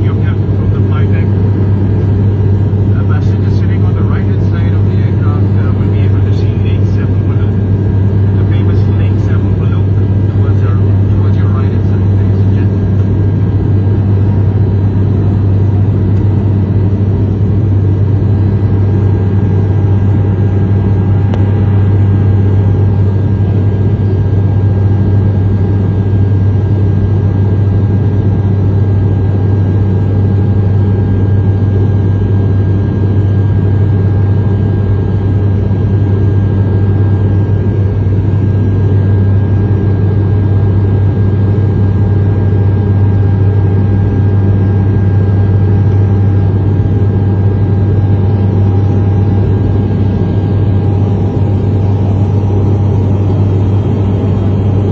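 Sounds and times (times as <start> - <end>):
aircraft engine drone in cabin: 0.0 - 54.9
faint steady whine: 0.0 - 54.9.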